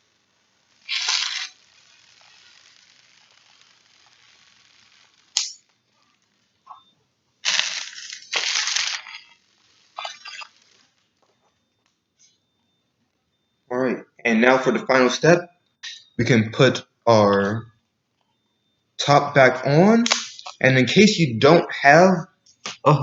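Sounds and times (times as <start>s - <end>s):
seed pouring into plastic bottle: 0.9s - 1.6s, 7.4s - 9.3s.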